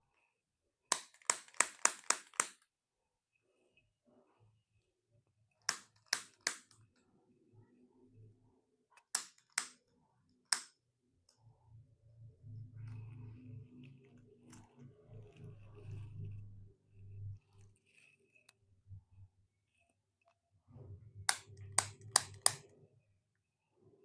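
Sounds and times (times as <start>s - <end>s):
sharp cracking clicks: 0.9s - 2.6s, 9.1s - 9.8s, 21.3s - 22.7s.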